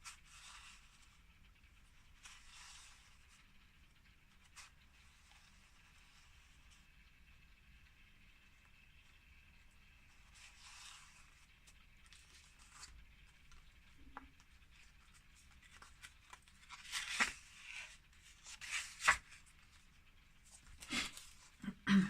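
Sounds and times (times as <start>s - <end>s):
paper rustling and tearing: 12.0s - 13.0s, 14.8s - 19.6s.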